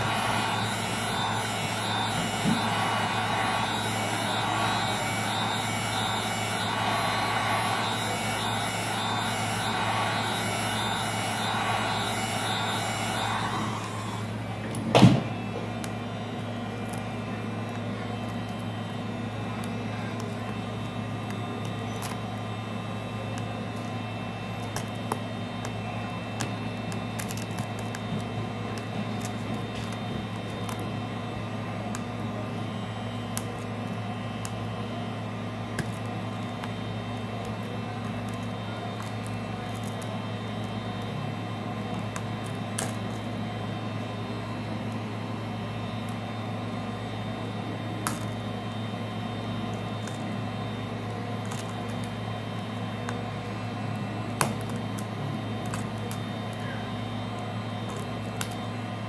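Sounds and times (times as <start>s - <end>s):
heat gun blowing: 0.0s - 19.8s.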